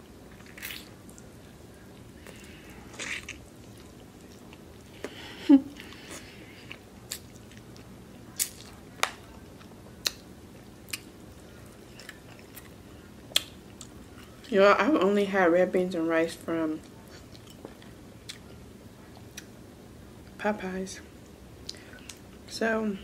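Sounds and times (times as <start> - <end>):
chewing with wet mouth smacks: 5.8 - 14.5.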